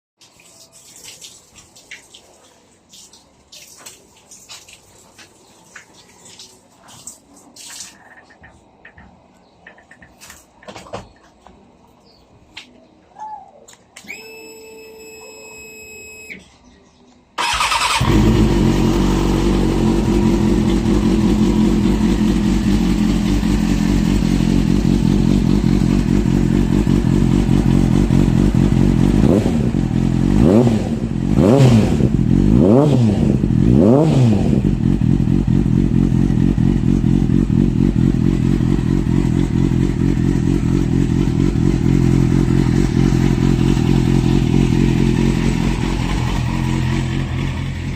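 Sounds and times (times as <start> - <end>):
motorcycle engine starting and idling: 17.4 - 47.9
motorcycle throttle blips: 17.4 - 47.9.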